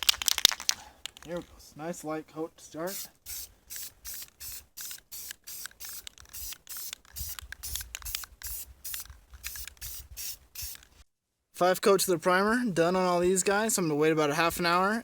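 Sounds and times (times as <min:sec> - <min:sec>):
aerosol can spraying: 0:02.8 - 0:11.0.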